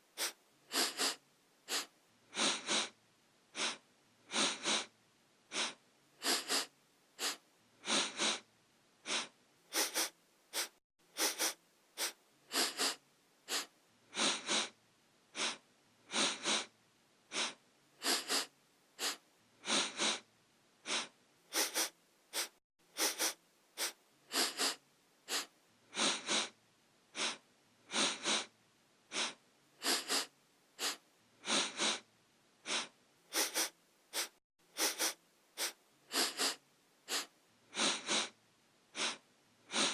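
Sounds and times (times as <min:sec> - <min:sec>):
person sniffing: 0:00.0 - 0:04.9, 0:05.5 - 0:16.7, 0:17.3 - 0:39.9.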